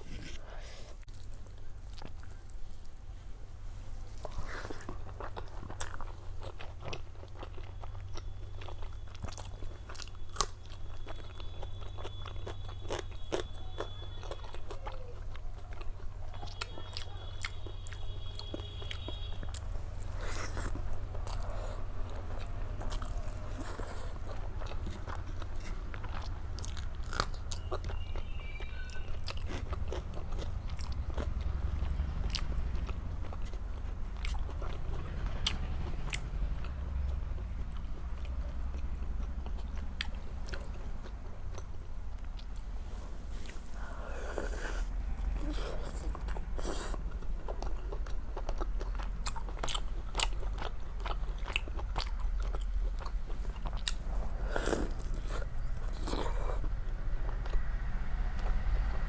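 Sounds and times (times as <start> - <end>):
chewing with wet mouth clicks: 1.0 - 3.0, 4.2 - 42.7, 43.4 - 57.7.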